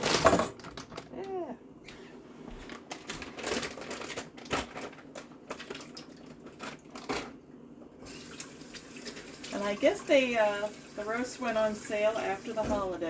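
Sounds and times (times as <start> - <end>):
clicks and knocks handling meat: 0.0 - 7.9.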